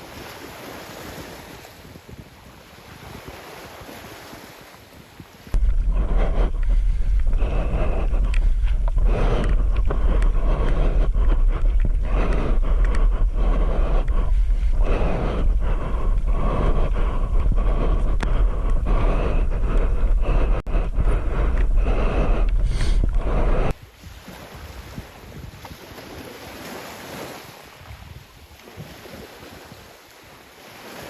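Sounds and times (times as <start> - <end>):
water rushing and splashing: 0.0 - 1.9, 23.8 - 31.0
wind buffeting microphone: 0.0 - 31.0.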